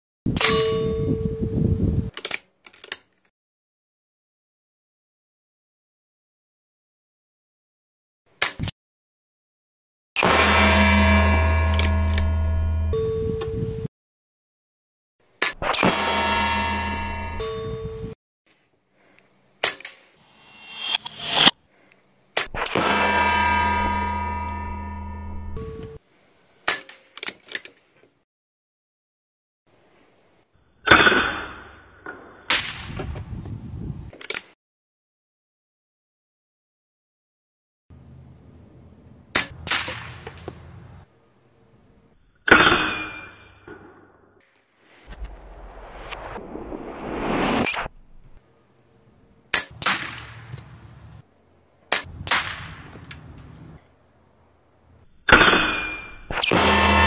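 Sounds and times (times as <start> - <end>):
short sharp click: 11.7 - 12.3
air rifle shot: 39.4 - 40.5, 49.6 - 50.6, 51.9 - 53.0
loud sudden sound: 45.1 - 48.0.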